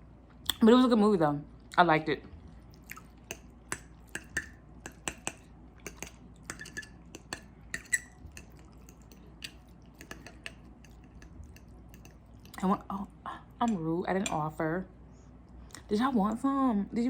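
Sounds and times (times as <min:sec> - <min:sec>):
cutlery clinking on a plate: 0:04.2 - 0:09.1.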